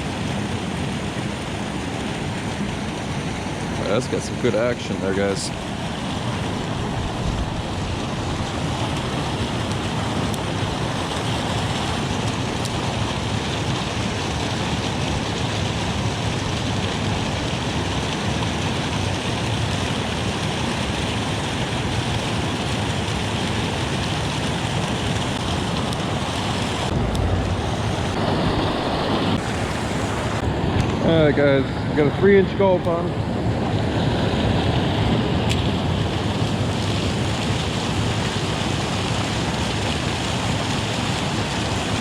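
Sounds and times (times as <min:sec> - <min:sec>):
water rushing over dam: 0:00.0 - 0:42.0
low rumble: 0:06.4 - 0:09.5, 0:25.4 - 0:31.0.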